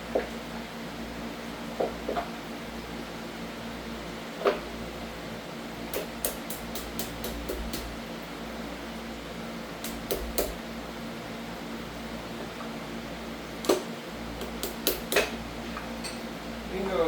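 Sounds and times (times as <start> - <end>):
steady hum: 4.5 - 17.0
hand tools clicking on metal: 14.4 - 15.3.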